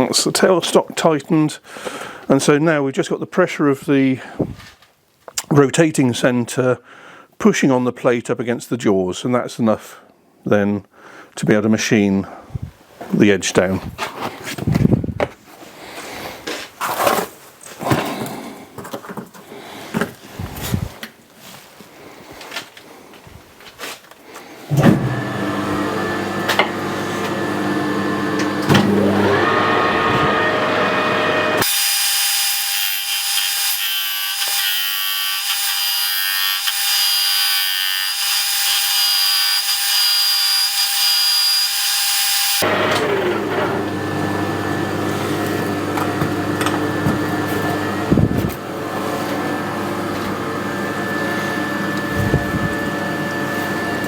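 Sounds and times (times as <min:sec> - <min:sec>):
metal lathe running: 0:25.1 - 0:33.8, 0:42.0 - 0:54.0.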